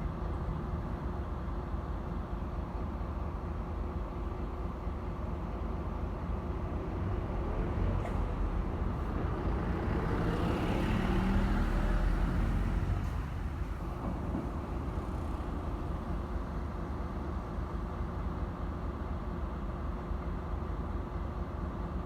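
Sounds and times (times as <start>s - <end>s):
vehicle passing: 9.2s - 13.6s
diesel locomotive engine idling: 11.7s - 22.0s.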